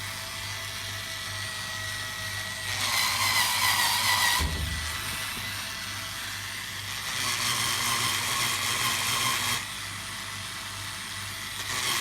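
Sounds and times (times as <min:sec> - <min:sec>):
floor polisher grinding: 0:02.8 - 0:06.8.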